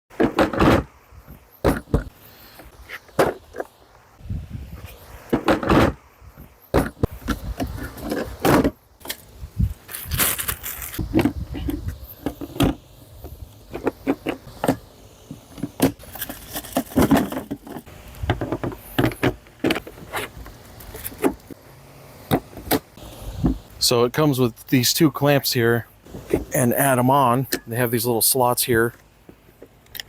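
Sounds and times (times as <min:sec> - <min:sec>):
folding workbench clattering: 0:15.6 - 0:19.8.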